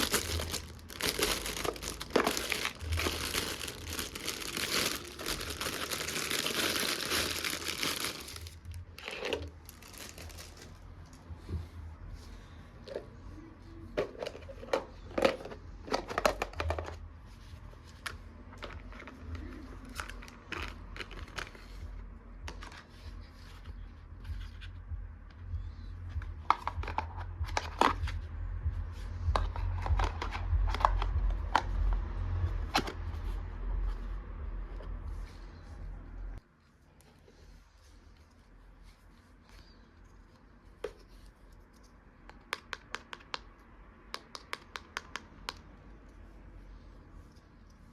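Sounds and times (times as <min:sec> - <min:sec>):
steady low hum: 0:21.3 - 0:36.5
plastic toys clicking and tapping: 0:44.1 - 0:45.7.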